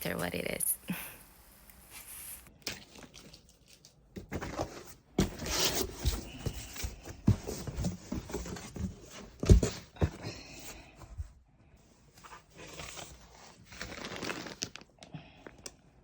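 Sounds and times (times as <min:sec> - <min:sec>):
cardboard packaging scraping and rustling: 0:04.2 - 0:10.2, 0:12.2 - 0:14.8.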